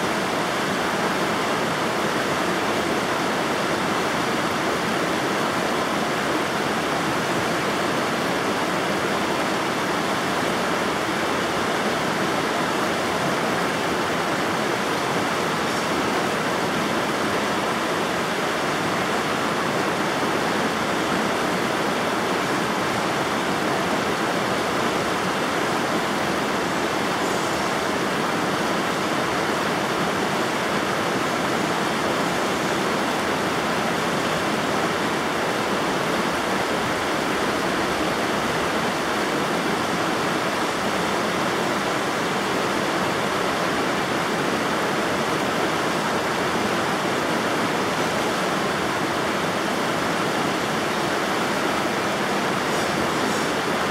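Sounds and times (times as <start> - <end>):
river water rushing: 0.0 - 53.9.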